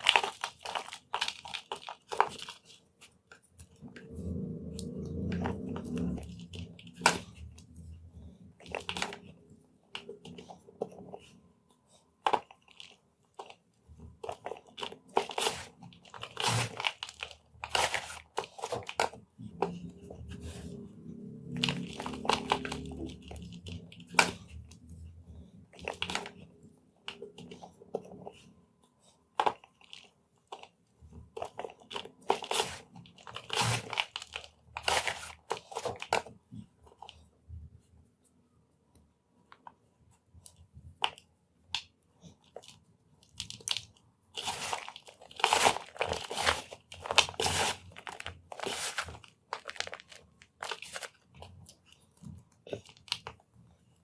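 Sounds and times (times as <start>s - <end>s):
chalk blocks crunching: 0.0s - 4.2s, 4.8s - 37.2s, 41.0s - 53.4s.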